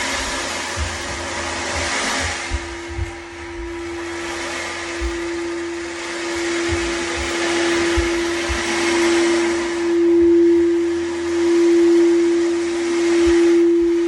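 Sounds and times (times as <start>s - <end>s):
dull thumps of running feet: 0.0s - 5.7s, 6.4s - 10.4s
singing bowl ringing: 1.6s - 14.0s.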